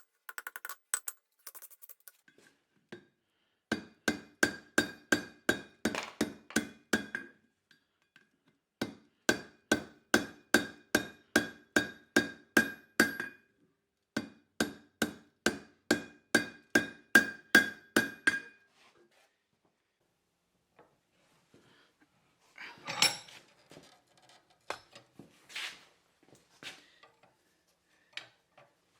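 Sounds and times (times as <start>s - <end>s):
hammer striking steel on anvil: 3.7s - 7.3s, 8.8s - 13.4s, 14.2s - 18.6s.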